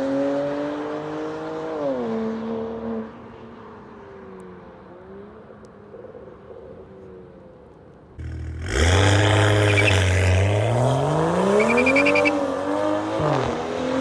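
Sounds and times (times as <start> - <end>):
car engine accelerating: 8.2 - 14.0.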